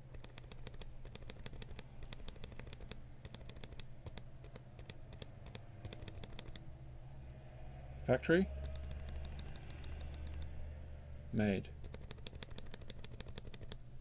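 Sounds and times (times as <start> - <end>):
keyboard switch clacking: 8.6 - 10.5.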